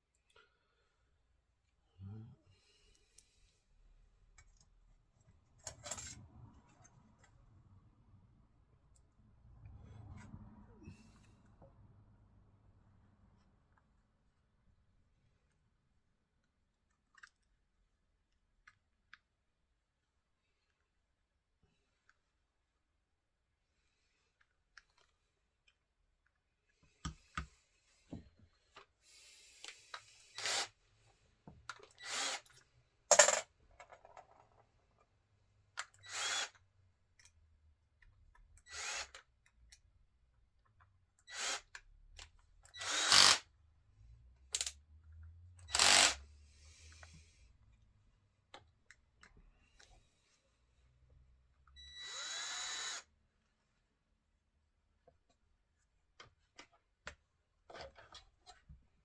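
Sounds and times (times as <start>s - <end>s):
power drill bursts: 30.3s - 30.7s, 32.0s - 32.4s, 36.0s - 36.6s, 38.7s - 39.2s, 41.3s - 41.6s, 42.8s - 43.4s, 45.7s - 46.2s, 51.9s - 53.0s.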